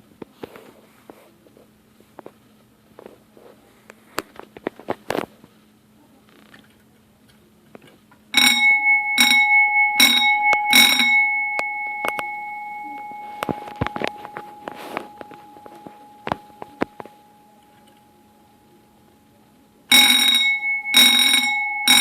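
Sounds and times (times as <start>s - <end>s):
electric fire alarm bell ringing: 8.3s - 19.1s, 19.9s - 22.0s.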